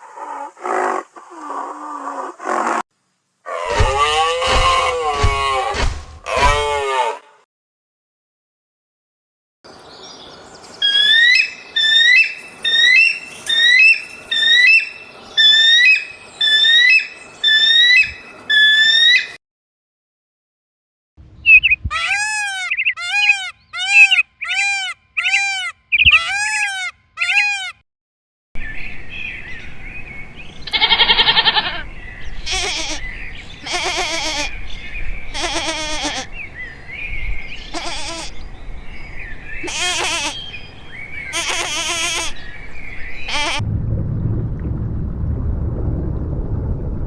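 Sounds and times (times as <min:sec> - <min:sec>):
quavering bleat-like calls: 0:30.7 - 0:34.6, 0:35.3 - 0:36.4, 0:37.6 - 0:38.4, 0:39.6 - 0:40.5, 0:41.3 - 0:42.5, 0:43.3 - 0:43.6.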